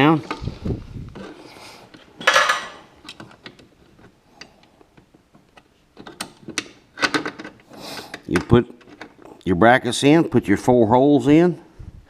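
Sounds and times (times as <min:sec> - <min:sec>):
metal brackets clinking: 0:02.2 - 0:03.5.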